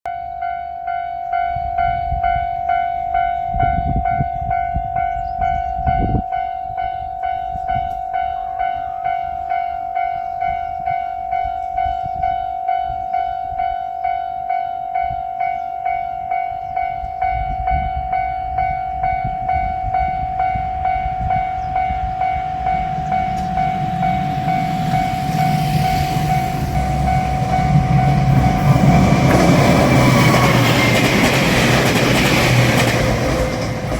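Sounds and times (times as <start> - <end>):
level crossing warning bell: 0.1 - 33.9
diesel train rumbling: 16.3 - 33.9.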